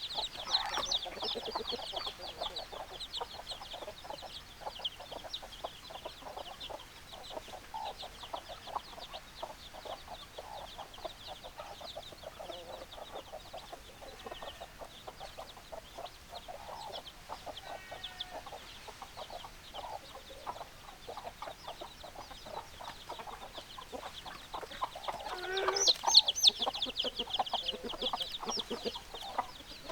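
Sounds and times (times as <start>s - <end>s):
chickens clucking: 0.0s - 29.9s
high chirping: 19.2s - 29.9s
chicken call: 25.2s - 26.0s.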